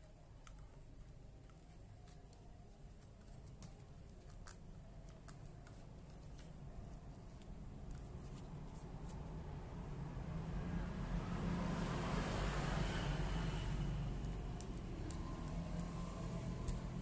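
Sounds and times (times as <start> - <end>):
passing vehicle rumble: 9.3 - 17.0.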